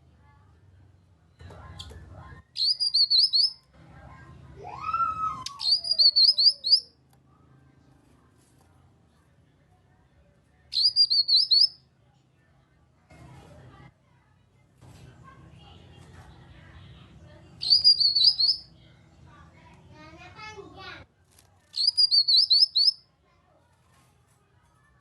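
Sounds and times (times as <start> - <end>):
bird sharp high chirps: 2.6 - 3.6, 5.5 - 6.9, 10.7 - 11.8, 17.6 - 18.7, 21.8 - 23.0.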